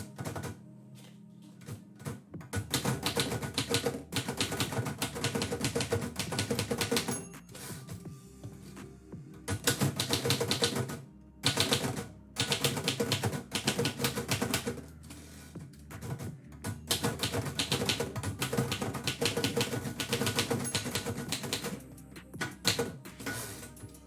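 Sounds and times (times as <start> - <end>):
typewriter keys clattering: 16.9 - 21.8.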